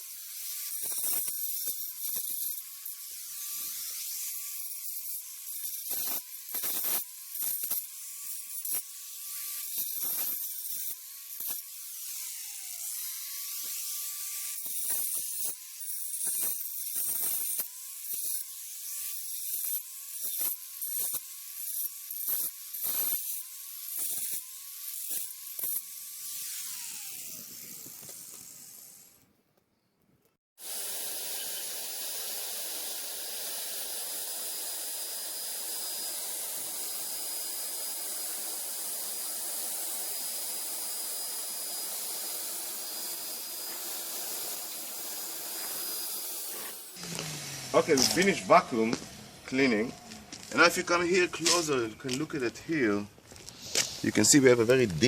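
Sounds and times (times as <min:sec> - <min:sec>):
angle grinder cutting concrete: 0:00.0 - 0:29.2, 0:30.6 - 0:55.0
vacuum cleaner running: 0:46.5 - 0:49.6.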